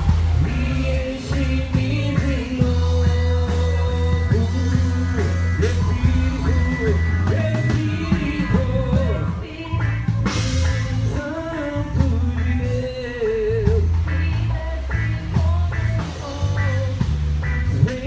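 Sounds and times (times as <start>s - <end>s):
person singing worship song: 0.0s - 9.9s
drum hits: 0.0s - 11.3s
bass notes: 0.0s - 18.0s.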